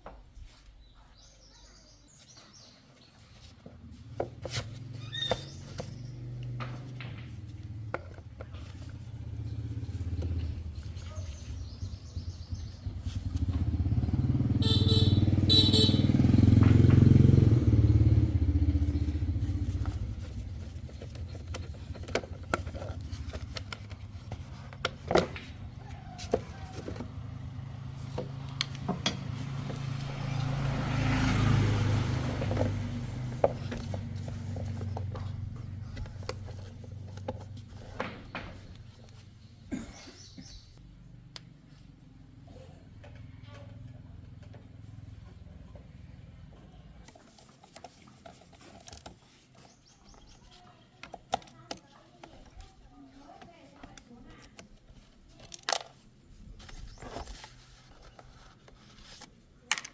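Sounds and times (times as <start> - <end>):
motorcycle engine revving: 3.8 - 41.3.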